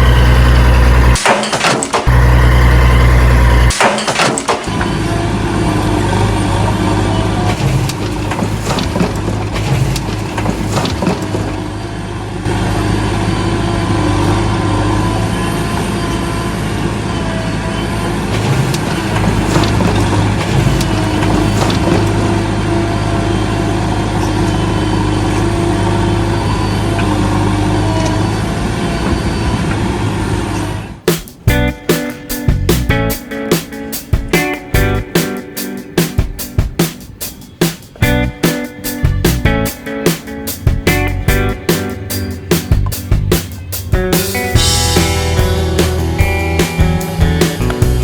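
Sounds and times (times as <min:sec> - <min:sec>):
machine humming: 0:00.0 - 0:01.2, 0:02.1 - 0:03.8, 0:40.6 - 0:48.0.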